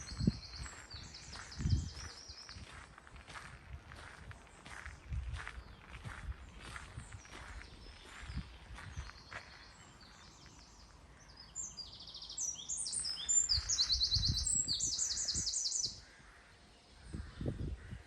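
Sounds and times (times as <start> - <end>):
songbirds singing: 0.0 - 18.0.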